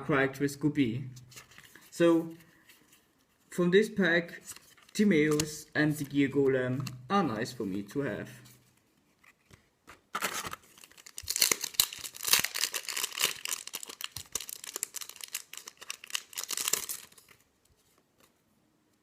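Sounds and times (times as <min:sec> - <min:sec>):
foil wrapper tearing and crinkling: 0:10.1 - 0:17.4.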